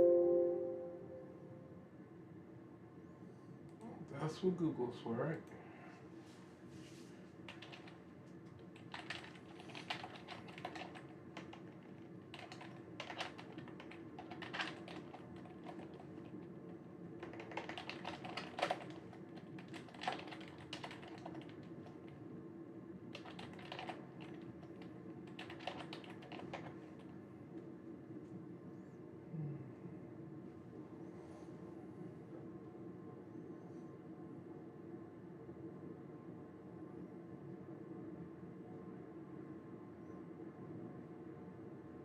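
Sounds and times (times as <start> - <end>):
steady low hum: 0.0 - 42.0
typing on computer keyboard: 7.5 - 22.2, 23.1 - 27.1.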